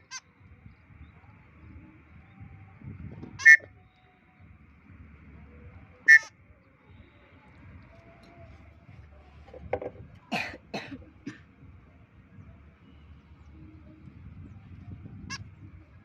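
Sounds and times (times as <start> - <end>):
birds calling harshly: 3.4 - 3.7, 6.0 - 6.3.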